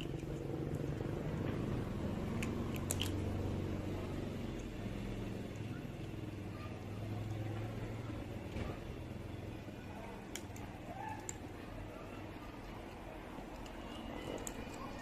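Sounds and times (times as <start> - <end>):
small clicks: 0.0 - 3.4, 10.2 - 11.5, 13.4 - 15.0.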